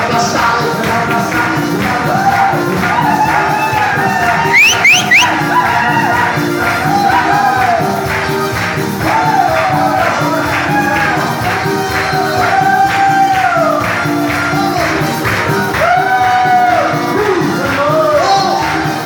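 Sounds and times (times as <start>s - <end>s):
live praise music: 0.0s - 19.0s
people singing: 0.0s - 19.0s.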